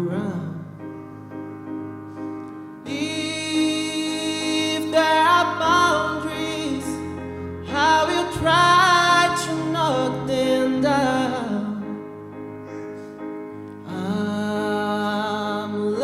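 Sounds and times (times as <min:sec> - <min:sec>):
man singing pop ballad: 0:00.0 - 0:00.8, 0:02.8 - 0:12.0, 0:13.9 - 0:16.0.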